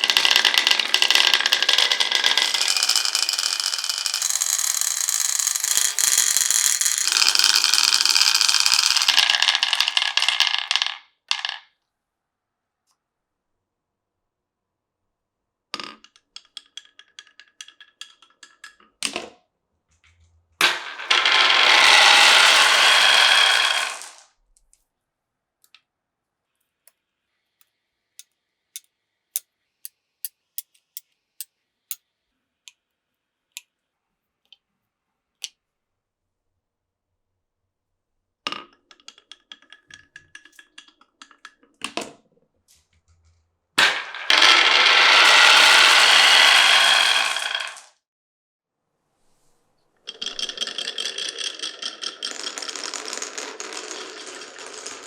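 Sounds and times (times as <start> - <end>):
marble rattling along track: 0.0 - 10.4, 20.6 - 24.2, 43.8 - 47.9, 50.1 - 55.0
marbles clicking on wooden track: 0.0 - 11.7, 15.8 - 19.3, 20.6 - 24.2, 38.5 - 42.2, 43.8 - 47.9, 50.1 - 55.0.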